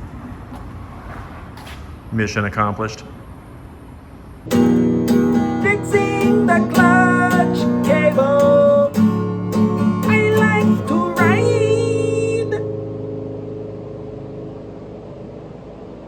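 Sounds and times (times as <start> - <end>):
acoustic guitar strumming: 4.5 - 16.0.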